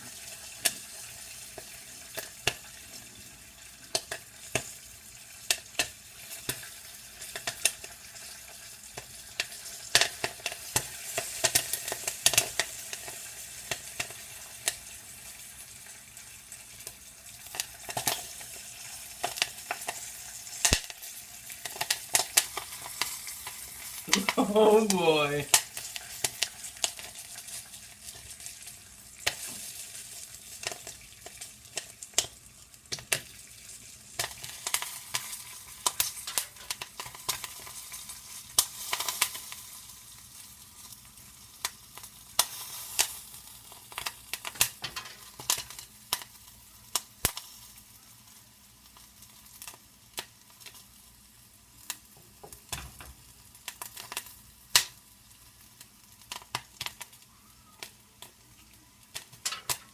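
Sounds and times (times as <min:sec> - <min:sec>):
hot oil sizzling: 0:00.0 - 0:59.9
popcorn popping: 0:03.9 - 0:04.7, 0:08.9 - 0:14.8, 0:17.4 - 0:28.4, 0:29.2 - 0:33.4, 0:34.1 - 0:39.8, 0:41.6 - 0:47.5, 0:51.9 - 0:55.0, 0:56.2 - 0:58.4, 0:59.1 - 0:59.9.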